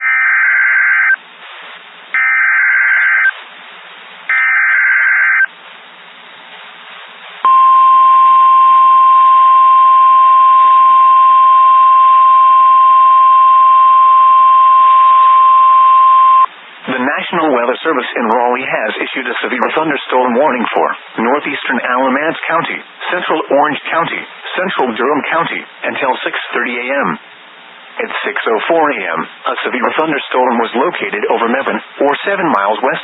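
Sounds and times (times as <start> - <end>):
faint static: 0.0 - 33.0
steady single-pitch alarm tone: 7.5 - 16.5.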